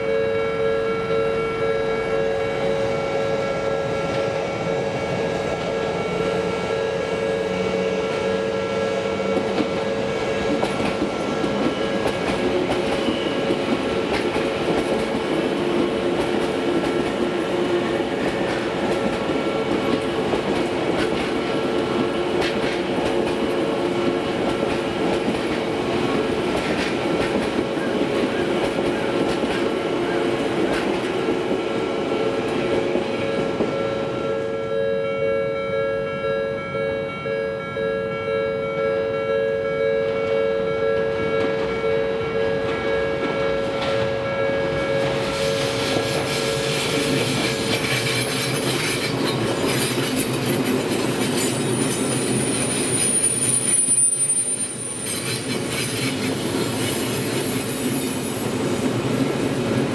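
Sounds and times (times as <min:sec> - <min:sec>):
crossing alarm bells ringing: 0:00.0 - 0:25.7, 0:27.6 - 0:59.7
train wheels clattering over rails: 0:07.9 - 0:33.8, 0:42.6 - 0:54.0, 0:54.8 - 0:59.9.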